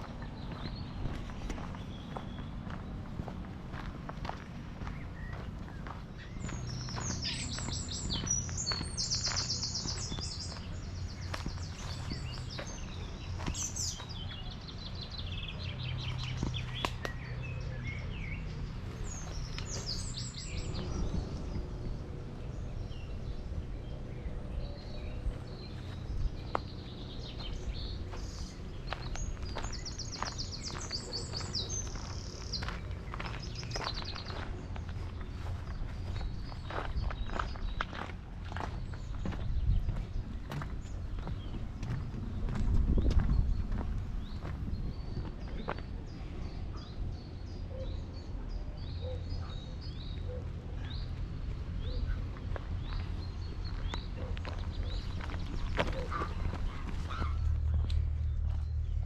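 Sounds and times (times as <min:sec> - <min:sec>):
footsteps: 0:00.0 - 0:14.2, 0:25.7 - 0:45.8
songbirds trilling: 0:00.0 - 0:59.0
steady low rumble: 0:00.0 - 0:59.0.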